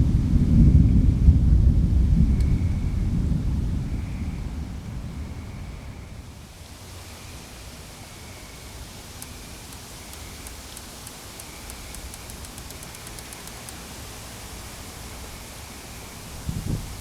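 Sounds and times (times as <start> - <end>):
rain and wind hiss: 0.0 - 17.0
faint high ticks: 2.3 - 2.6, 8.5 - 14.6.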